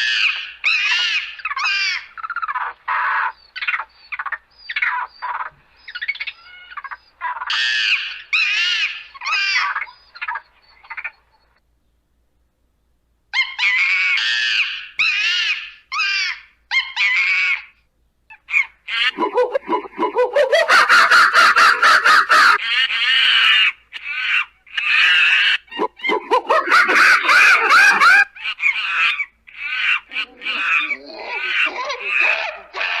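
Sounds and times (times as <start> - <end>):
monkeys screaming: 0.0 - 11.1, 13.4 - 33.0
monkeys chattering cries: 0.0 - 11.2, 13.4 - 33.0.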